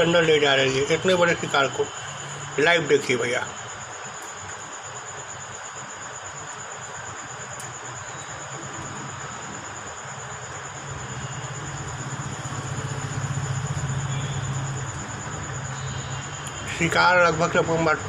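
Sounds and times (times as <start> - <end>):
cricket trill: 0.0 - 18.0
passing vehicle engine hum: 11.4 - 16.3.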